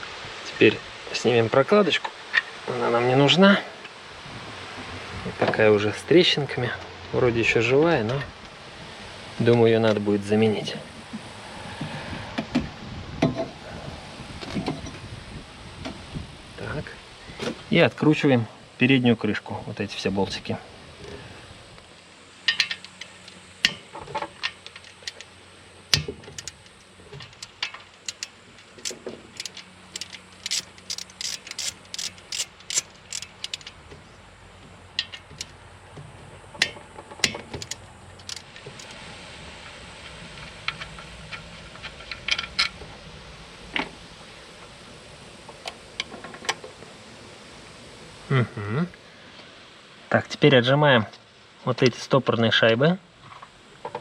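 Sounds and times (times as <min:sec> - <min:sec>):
metal tools clinking: 0:22.4 - 0:25.3, 0:25.9 - 0:34.0, 0:34.9 - 0:35.6, 0:36.6 - 0:39.0
ratchet wrench clicking: 0:22.5 - 0:25.3, 0:25.9 - 0:33.8, 0:35.0 - 0:35.6, 0:36.6 - 0:39.0.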